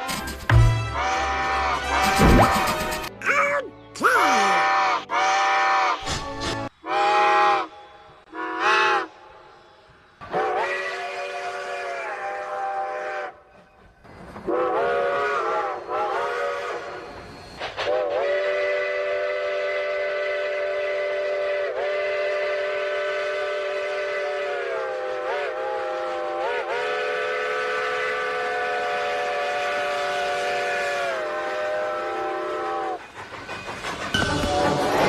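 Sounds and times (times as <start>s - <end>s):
chime train whistle blast: 14.5s - 33.0s.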